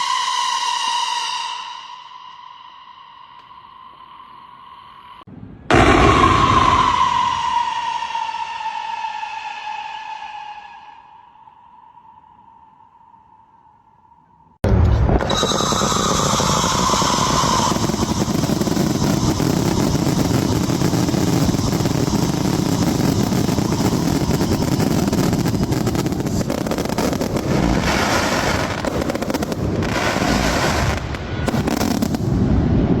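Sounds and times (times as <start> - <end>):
fireworks low rumble: 5.3 - 7.9, 14.6 - 33.0
fireworks bursts: 14.9 - 33.0
fireworks crackling: 15.2 - 32.9.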